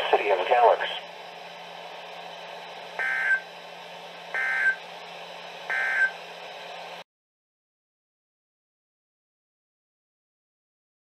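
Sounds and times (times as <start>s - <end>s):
steady radio hiss: 0.0s - 3.0s
digital data bursts: 3.0s - 3.4s.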